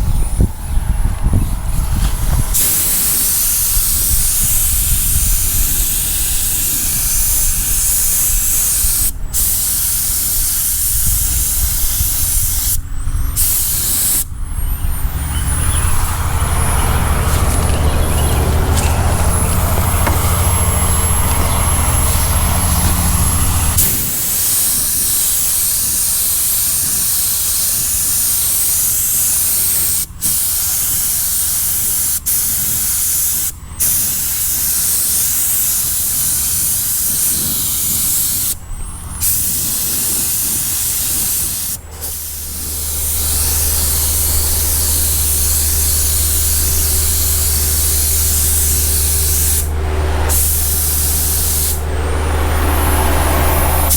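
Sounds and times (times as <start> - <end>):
paint spray gun hissing: 0.0 - 53.9
low steady hum: 42.2 - 53.9.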